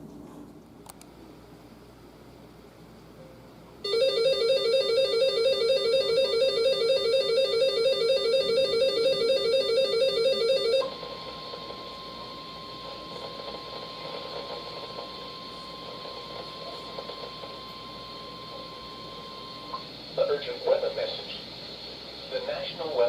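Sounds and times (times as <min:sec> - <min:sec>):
rapid high beeping tones: 0:03.9 - 0:11.4.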